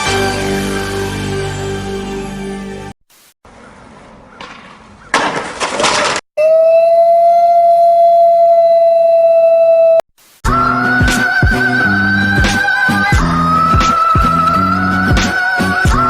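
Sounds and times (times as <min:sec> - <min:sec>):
music: 0:00.0 - 0:02.9, 0:10.4 - 0:16.0.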